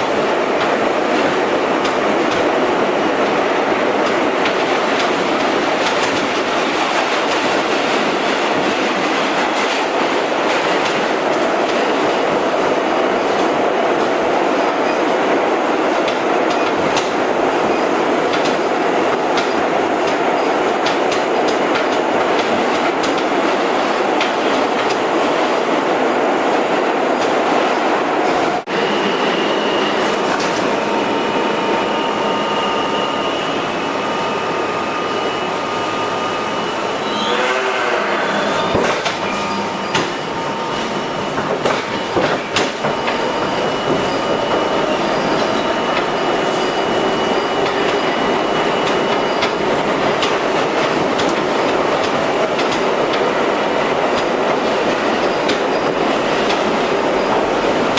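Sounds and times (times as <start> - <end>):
subway car wheels rumbling on rail: 0.0 - 57.9
wheels clacking over rail joints: 38.7 - 46.2, 47.0 - 57.9.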